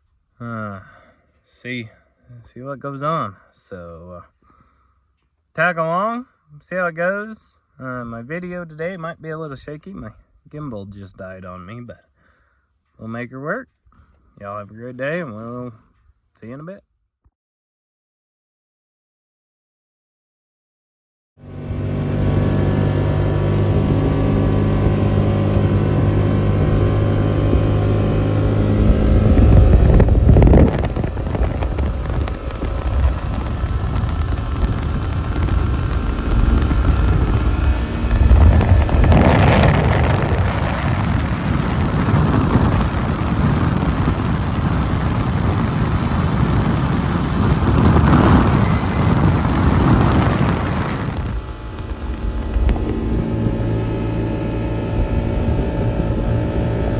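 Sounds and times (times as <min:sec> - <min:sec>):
vehicle engine running: 0:21.4 - 0:56.9
rough rushing sound: 0:21.5 - 0:56.9.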